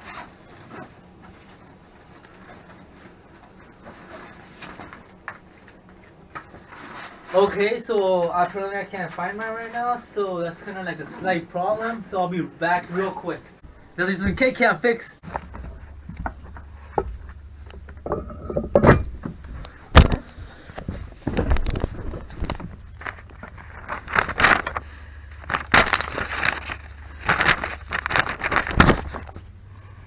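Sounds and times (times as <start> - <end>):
scraping rustling noise: 0.0 - 13.6, 15.2 - 29.4
car engine rumbling: 15.2 - 30.0.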